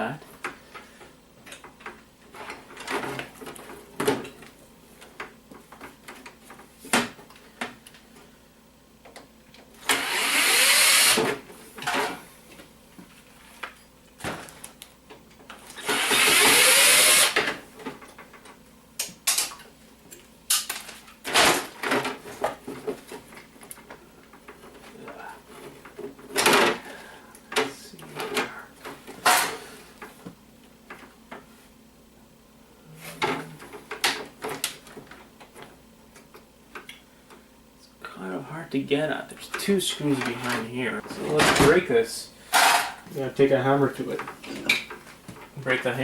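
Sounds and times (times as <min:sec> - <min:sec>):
power drill running: 0:09.8 - 0:11.3, 0:15.8 - 0:17.5.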